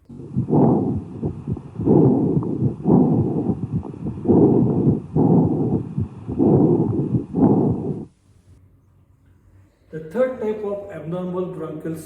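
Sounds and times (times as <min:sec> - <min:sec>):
low breathing through stethoscope: 0:00.1 - 0:08.1.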